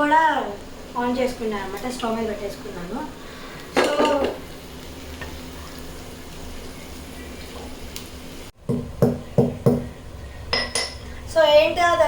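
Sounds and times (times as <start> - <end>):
spices frying in oil: 0.0 - 8.6
nutmeg being pounded: 8.6 - 9.9.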